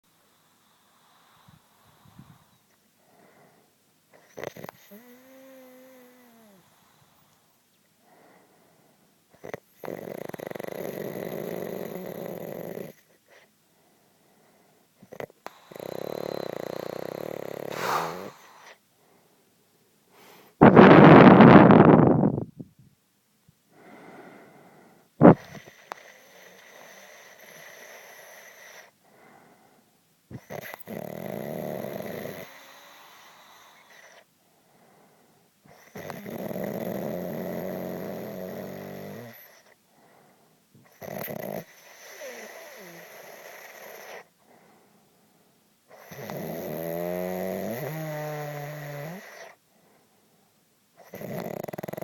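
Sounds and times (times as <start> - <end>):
quiet breaths: 0.0 - 20.6, 23.4 - 52.0
man snoring heavily: 4.3 - 6.6, 9.4 - 13.0, 15.1 - 18.6, 30.3 - 34.2, 35.7 - 39.6, 40.9 - 44.3, 46.0 - 49.6, 51.0 - 52.0.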